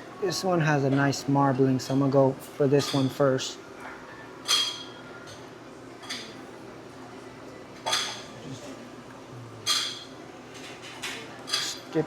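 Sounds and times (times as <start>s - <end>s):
utensils clinking on dishes: 1.8s - 3.2s, 3.8s - 6.4s, 7.8s - 8.4s, 9.6s - 12.0s.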